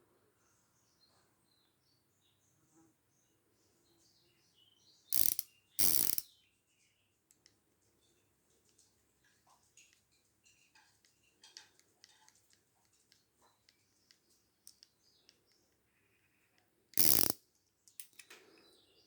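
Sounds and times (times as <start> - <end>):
revolver action ratcheting: 5.1 - 6.2, 17.0 - 17.4
faint bird chirps: 13.1 - 16.9.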